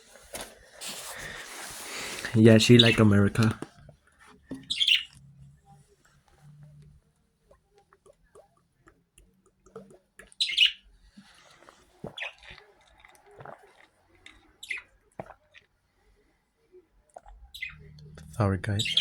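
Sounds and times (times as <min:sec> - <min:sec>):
pet bird chirping: 0:02.5 - 0:03.1, 0:04.6 - 0:05.2, 0:10.3 - 0:10.9, 0:14.6 - 0:15.0, 0:17.3 - 0:19.0.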